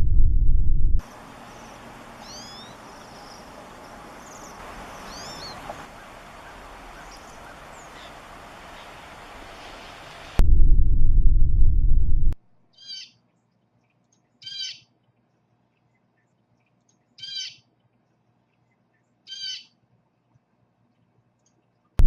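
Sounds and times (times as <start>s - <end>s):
loud low rumble: 0.0s - 1.1s, 10.4s - 12.4s
short bird calls: 1.4s - 9.8s, 12.8s - 13.2s, 14.4s - 14.9s, 17.2s - 17.7s, 19.3s - 19.7s.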